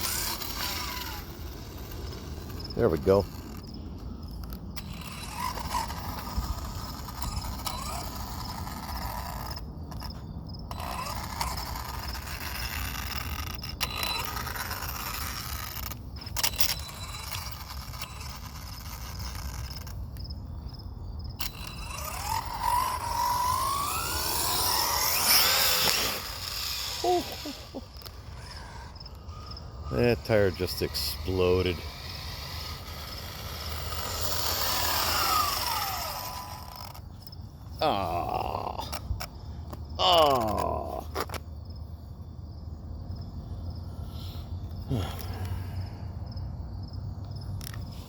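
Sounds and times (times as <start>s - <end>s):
electric motor whining: 0.0s - 20.0s, 21.4s - 37.2s.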